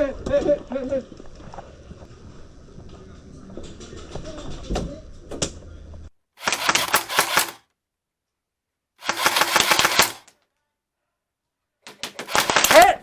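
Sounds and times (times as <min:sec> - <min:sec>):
airsoft gun full-auto bursts: 0:06.4 - 0:07.6, 0:09.0 - 0:10.3, 0:11.9 - 0:13.0.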